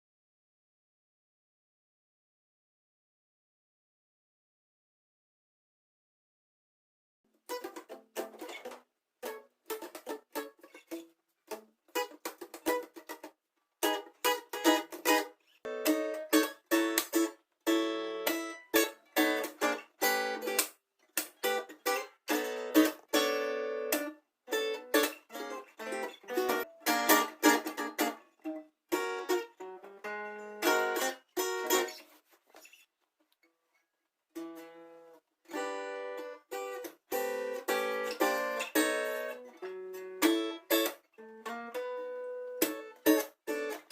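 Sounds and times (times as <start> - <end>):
guitar picking single notes: 13.8 - 32.0, 34.4 - 43.9.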